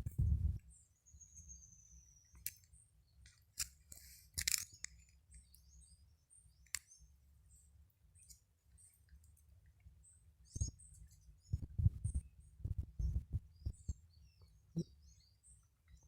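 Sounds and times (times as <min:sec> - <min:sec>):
birds whistling and chirping: 0:00.7 - 0:02.8, 0:10.4 - 0:12.3.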